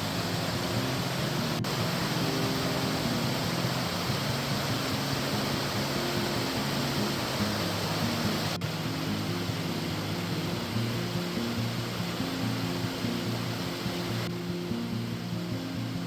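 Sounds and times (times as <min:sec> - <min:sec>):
waterfall and creek rushing: 0:00.0 - 0:16.0.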